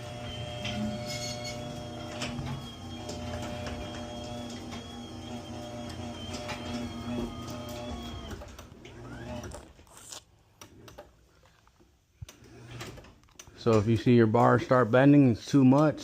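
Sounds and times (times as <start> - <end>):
garage door opener whining: 0.0 - 9.9, 12.3 - 13.1.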